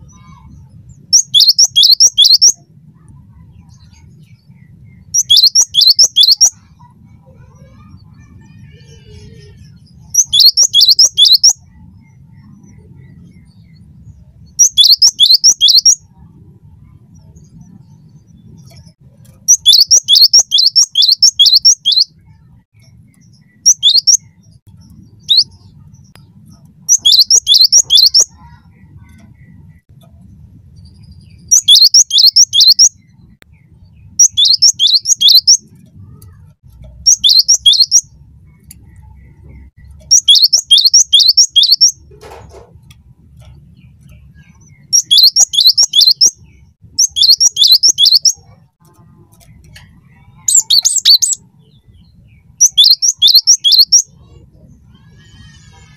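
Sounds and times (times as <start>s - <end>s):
bird singing sharp notes: 0.0s - 6.8s, 7.6s - 16.0s, 16.8s - 42.1s, 42.8s - 55.9s
faint low hum: 0.0s - 20.3s, 32.8s - 45.1s.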